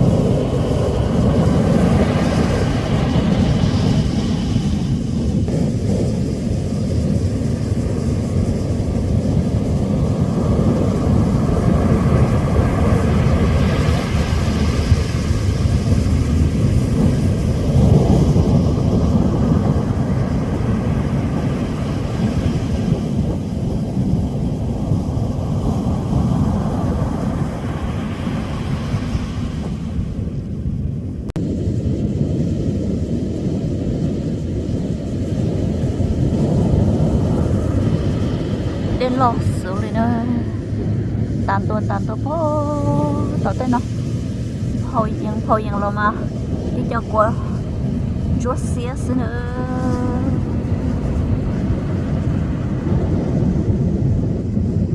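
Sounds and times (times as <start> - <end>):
ocean surf: 0.0 - 54.9
wind on microphone: 0.0 - 54.9.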